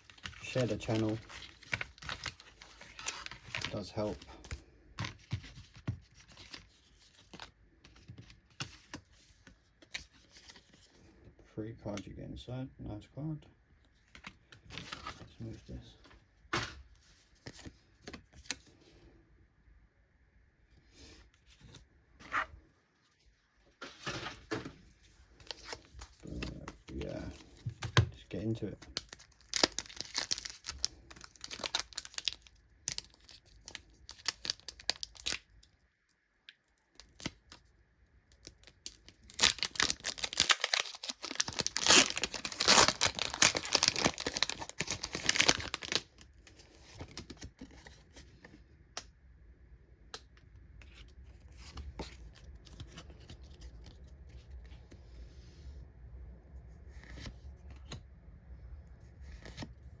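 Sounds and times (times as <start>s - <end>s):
foil wrapper tearing and crinkling: 0.0s - 4.1s, 29.0s - 35.4s, 38.4s - 46.2s.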